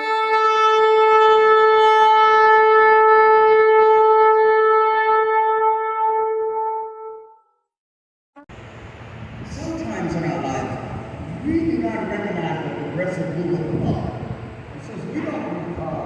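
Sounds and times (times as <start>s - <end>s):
ram's horn long blast: 0.0s - 7.4s.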